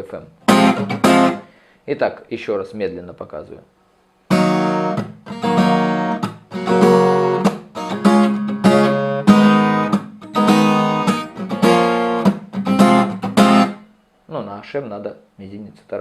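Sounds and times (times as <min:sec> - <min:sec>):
acoustic guitar muted strumming: 0:00.5 - 0:01.5, 0:04.3 - 0:13.9.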